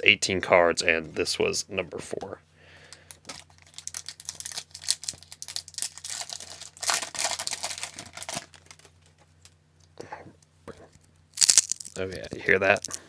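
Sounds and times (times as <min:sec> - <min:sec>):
card pack wrapper crinkling and tearing: 0:03.3 - 0:08.9, 0:11.4 - 0:13.0.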